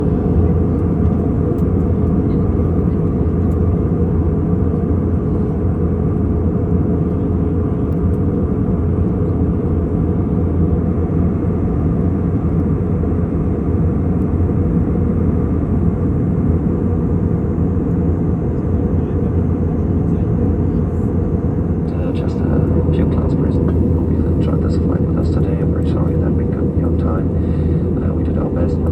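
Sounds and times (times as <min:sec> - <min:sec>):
airplane cabin engine drone: 0:00.0 - 0:28.9
faint steady hum: 0:20.0 - 0:28.9.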